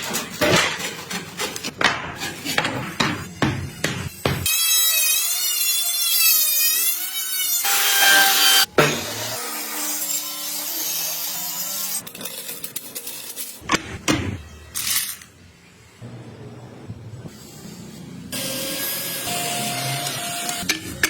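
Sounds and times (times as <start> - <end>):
wood cutting noise: 2.4 - 12.1.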